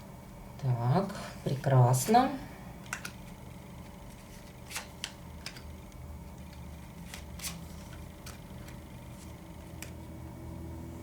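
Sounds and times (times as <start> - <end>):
cards clicking and rustling: 2.8 - 10.1.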